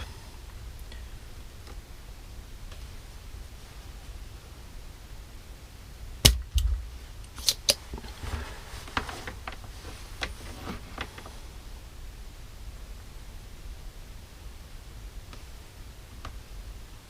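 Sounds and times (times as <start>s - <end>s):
light taps and scraping: 7.7s - 11.4s.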